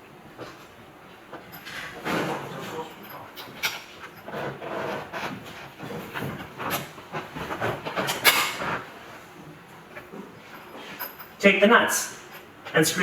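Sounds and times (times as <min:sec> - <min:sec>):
loud clack and scrape: 0:01.3 - 0:11.4
metal hardware clicks and scrapes: 0:01.4 - 0:08.8, 0:10.0 - 0:11.4.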